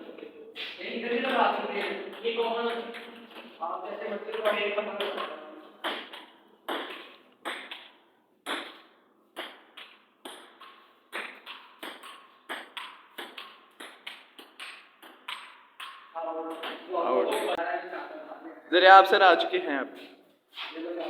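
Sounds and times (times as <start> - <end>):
table tennis ball clicks: 4.3 - 17.6.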